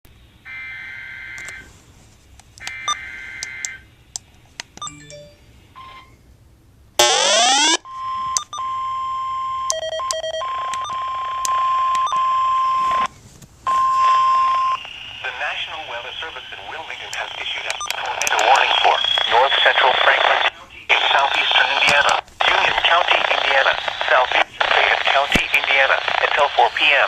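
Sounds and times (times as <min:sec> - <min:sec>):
steady alert tone: 0:04.8 - 0:06.0
clicks and beeps: 0:04.8 - 0:06.1, 0:08.3 - 0:08.7, 0:09.7 - 0:13.1, 0:17.6 - 0:19.4.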